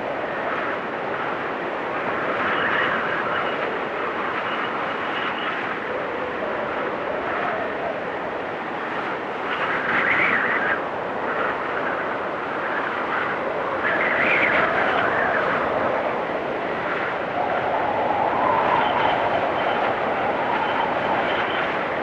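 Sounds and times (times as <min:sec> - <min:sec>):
wind blowing in gusts: 0:00.0 - 0:22.0.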